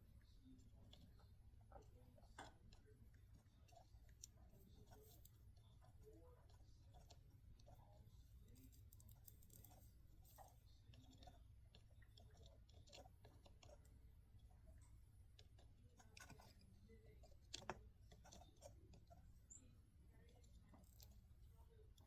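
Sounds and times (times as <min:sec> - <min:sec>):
clicks and handling noises: 0:00.5 - 0:22.0.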